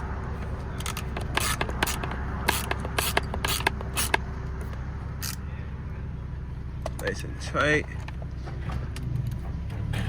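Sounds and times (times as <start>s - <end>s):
car engine idling: 0.0s - 10.0s
hand ratchet rasping: 0.9s - 4.2s.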